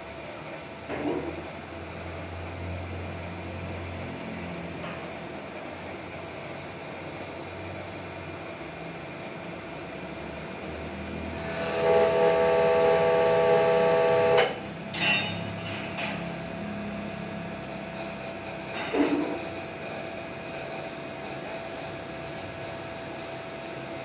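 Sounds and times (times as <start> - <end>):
hydraulic machinery humming: 10.8 - 23.8
loud whining tone: 11.1 - 14.6.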